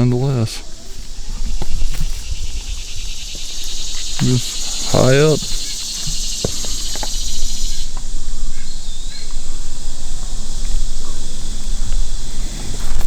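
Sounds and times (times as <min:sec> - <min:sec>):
insects buzzing: 0:00.0 - 0:13.0
low steady rumble: 0:07.2 - 0:13.0.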